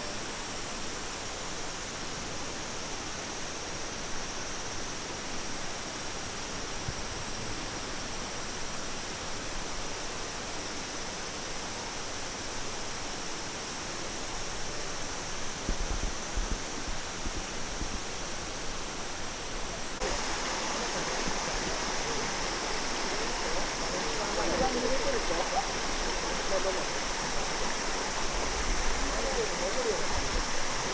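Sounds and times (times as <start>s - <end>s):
water rushing: 18.7s - 30.9s.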